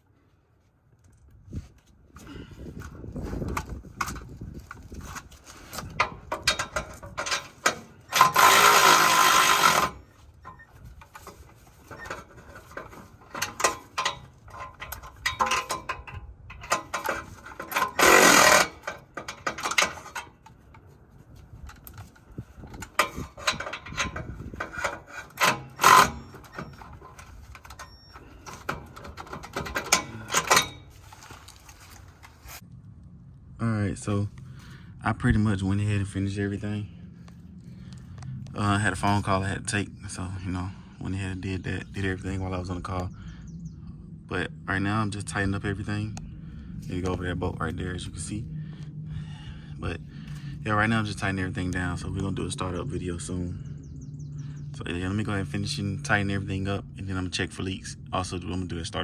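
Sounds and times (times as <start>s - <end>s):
power tool whirring: 5.7s - 16.0s, 16.6s - 20.5s, 22.7s - 30.9s
metallic tool clanks: 5.8s - 20.6s, 22.8s - 31.3s.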